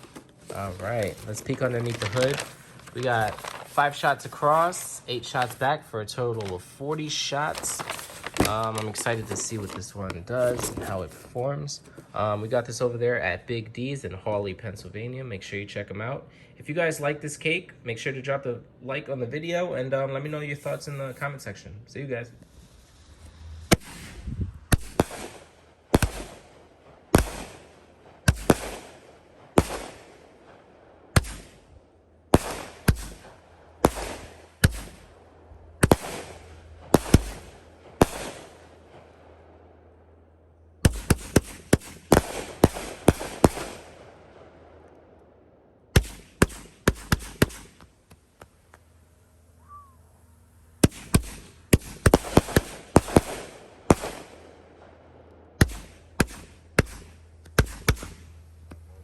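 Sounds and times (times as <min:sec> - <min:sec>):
firework cake bangs: 0:23.7 - 0:26.5, 0:27.1 - 0:30.2, 0:31.1 - 0:31.6, 0:32.3 - 0:35.1, 0:35.8 - 0:38.6, 0:40.9 - 0:43.9, 0:50.8 - 0:54.4, 0:55.6 - 0:58.3.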